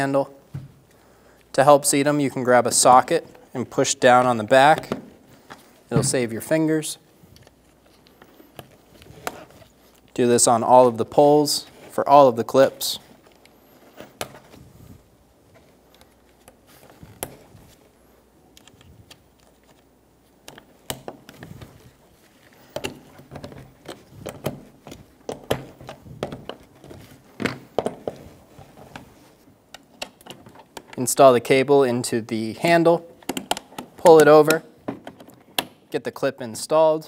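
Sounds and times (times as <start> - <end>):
clips clicking and knocking: 20.4 - 29.1, 33.2 - 35.9.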